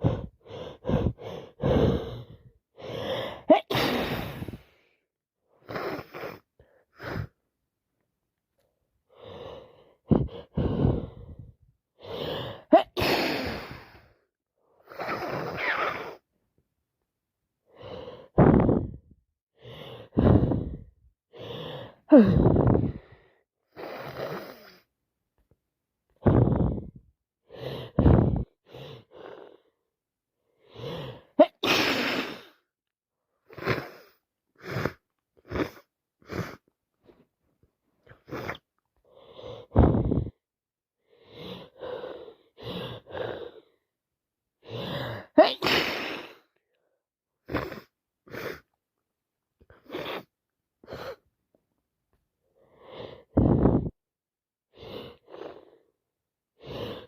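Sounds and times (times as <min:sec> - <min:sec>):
woman sniffing: 0:00.0 - 0:04.8, 0:05.6 - 0:07.4, 0:12.0 - 0:14.2, 0:14.8 - 0:16.2, 0:30.7 - 0:32.6, 0:33.4 - 0:36.7, 0:38.1 - 0:38.7, 0:44.7 - 0:46.6, 0:47.4 - 0:48.8, 0:49.7 - 0:51.2
woman sneezing: 0:03.5 - 0:04.4, 0:12.7 - 0:13.6, 0:31.4 - 0:32.4, 0:45.3 - 0:46.4.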